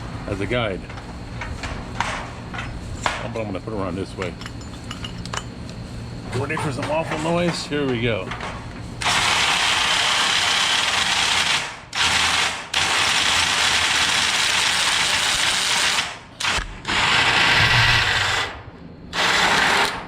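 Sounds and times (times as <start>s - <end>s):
power drill cutting with hole saw: 16.9s - 18.5s.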